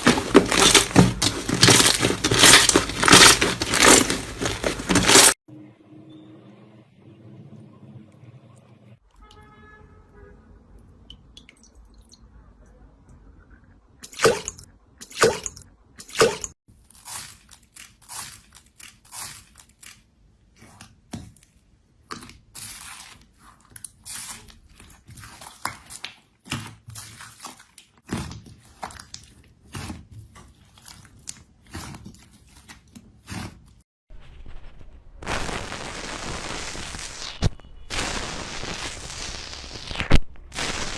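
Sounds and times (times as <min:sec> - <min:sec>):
slime squishing and crunching: 0:00.0 - 0:05.4, 0:16.2 - 0:33.8.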